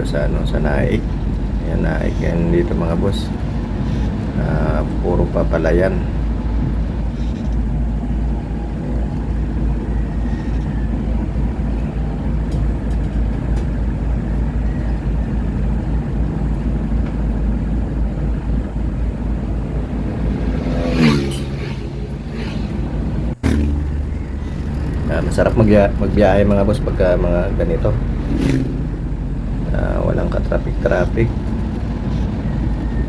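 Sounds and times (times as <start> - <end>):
vehicle engine and road noise: 0.0 - 33.0
short pitched sound: 20.4 - 26.0.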